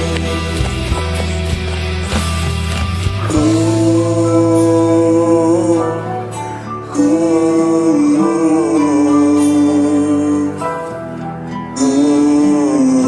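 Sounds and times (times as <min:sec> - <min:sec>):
steady low bass note: 0:00.0 - 0:06.1
held melody notes with vibrato: 0:00.0 - 0:13.0.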